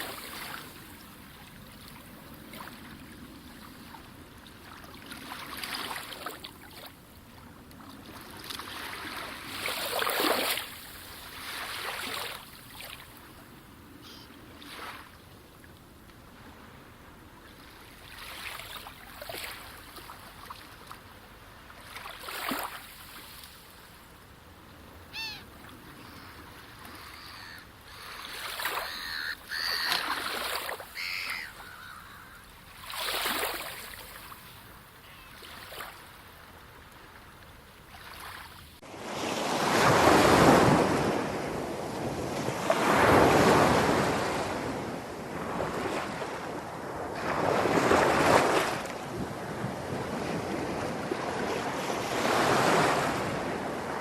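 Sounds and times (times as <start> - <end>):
sea waves washing in: 0.0 - 6.9, 7.9 - 13.4, 24.6 - 31.1, 32.4 - 34.8, 37.9 - 54.0
surf waves breaking: 0.0 - 54.0
short high calls: 25.1 - 25.5, 30.9 - 32.4.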